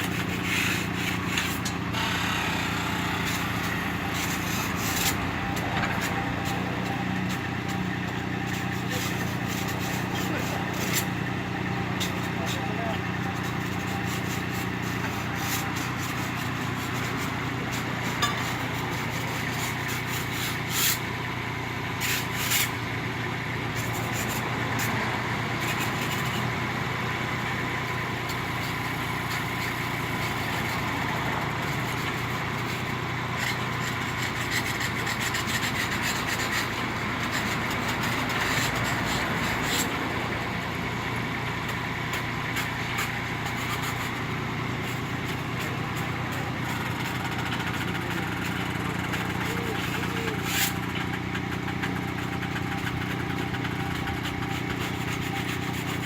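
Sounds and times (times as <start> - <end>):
sharp knocks and scrapes: 0.0 - 21.1, 22.0 - 22.8, 23.7 - 25.0, 25.6 - 26.5, 27.8 - 56.0
excavator diesel engine running: 0.0 - 56.0.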